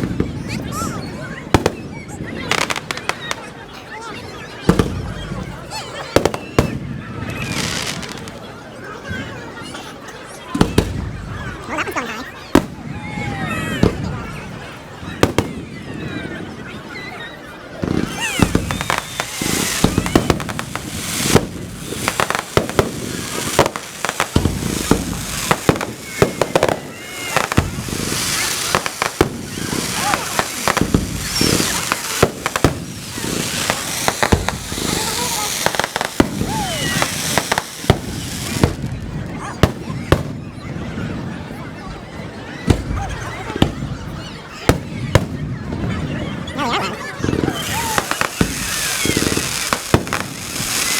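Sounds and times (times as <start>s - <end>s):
firework bangs: 0.0s - 3.6s, 4.6s - 8.5s, 10.5s - 11.8s, 12.4s - 16.5s, 17.8s - 41.3s, 42.6s - 44.0s, 44.6s - 46.6s, 47.2s - 50.9s
firework crackling: 0.0s - 3.6s, 4.7s - 8.5s, 10.6s - 14.2s, 15.2s - 15.7s, 17.8s - 40.4s, 44.7s - 50.9s
crowd noise: 0.0s - 50.9s
firework whistling: 17.8s - 40.4s, 47.2s - 50.9s.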